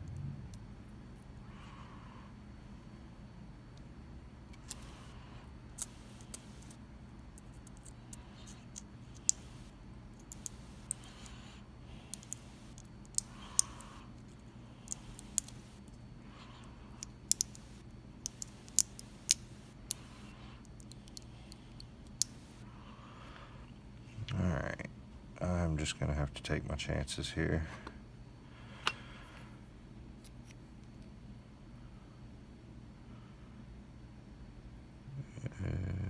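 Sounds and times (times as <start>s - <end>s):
steady low hum: 0.0s - 36.0s
lock picking metallic clicks: 5.8s - 6.8s, 10.2s - 11.4s, 12.1s - 13.9s, 14.9s - 15.9s, 17.0s - 22.6s.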